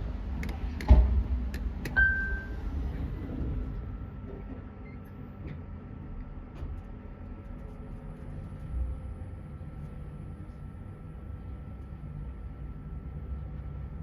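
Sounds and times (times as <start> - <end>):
elevator low rumble: 0.0 - 14.0
faint high whine: 1.9 - 2.8
brief high tone: 2.0 - 2.6.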